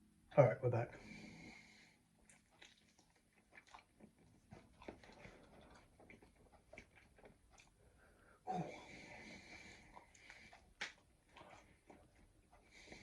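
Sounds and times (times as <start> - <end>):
chewing crispy pizza: 1.4 - 13.0
person breathing: 7.9 - 10.7.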